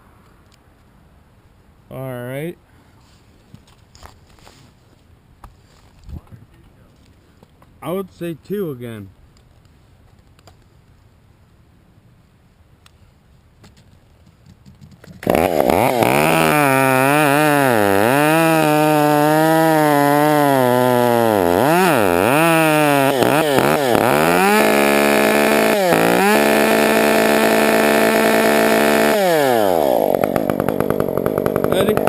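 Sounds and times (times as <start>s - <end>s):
chainsaw starting and revving: 15.0s - 32.0s.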